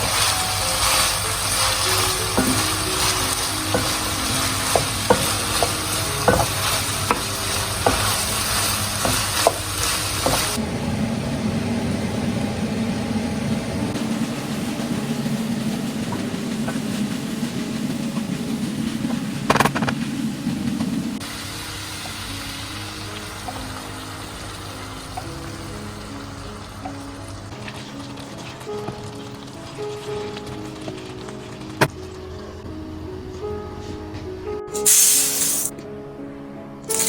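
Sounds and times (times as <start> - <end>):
food sizzling in a pan: 0.0 - 32.5, 34.7 - 35.7
utensil knocking against pan: 2.3 - 8.3
steady low rumble: 10.6 - 21.2.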